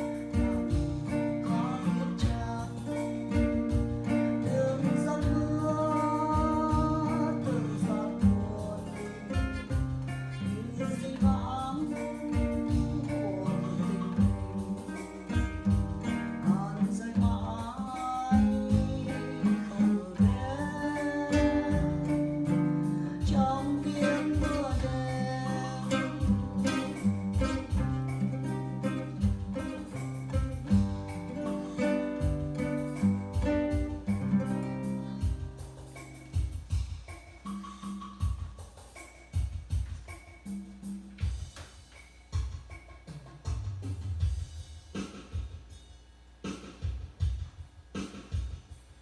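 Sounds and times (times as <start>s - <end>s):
held melody line: 0.0s - 38.5s
acoustic guitar plucked and strummed: 0.0s - 45.1s.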